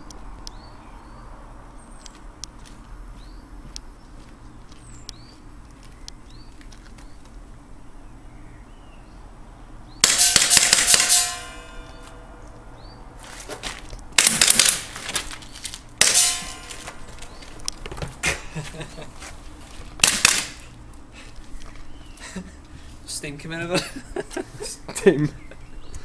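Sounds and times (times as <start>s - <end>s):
airsoft pistol full-auto bursts: 10.0s - 11.8s, 14.2s - 15.0s, 20.0s - 20.6s.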